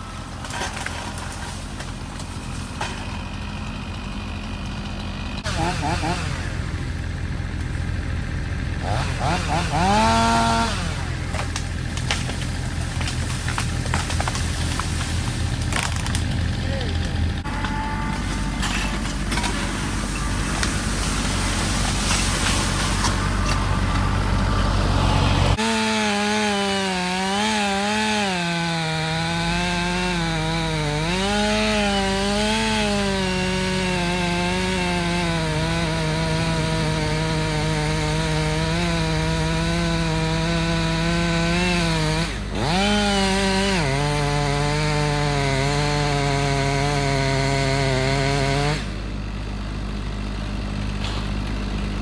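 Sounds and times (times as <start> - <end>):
low engine drone: 0.0 - 25.6
chainsaw cutting wood: 0.0 - 52.0.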